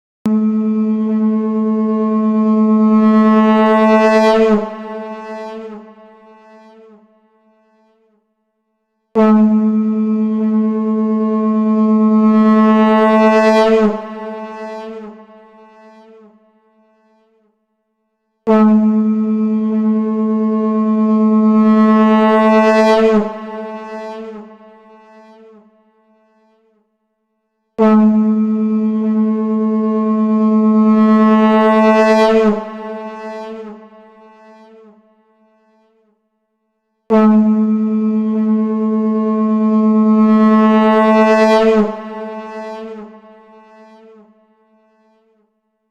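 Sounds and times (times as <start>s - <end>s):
conch shell blown: 0.3s - 8.2s, 9.2s - 17.5s, 18.4s - 26.8s, 27.8s - 36.2s, 37.1s - 45.5s.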